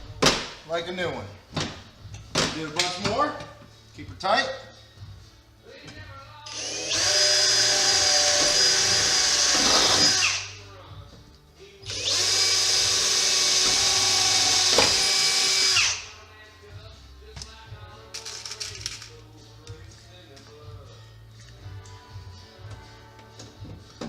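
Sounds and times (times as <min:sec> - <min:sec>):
electric drill whining through metal: 0:06.5 - 0:10.6, 0:11.8 - 0:16.1.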